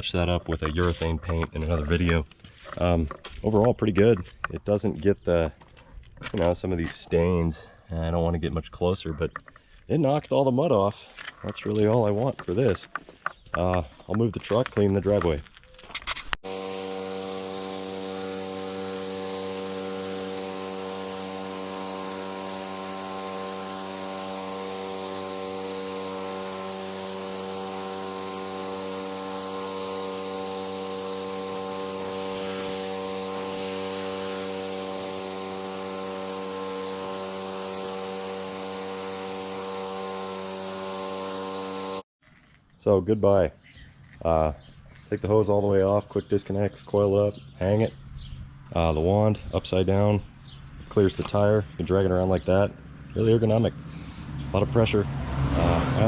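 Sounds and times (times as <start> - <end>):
water spray hissing: 16.4 - 42.0
pressure washer engine humming: 16.4 - 42.1, 53.1 - 56.0.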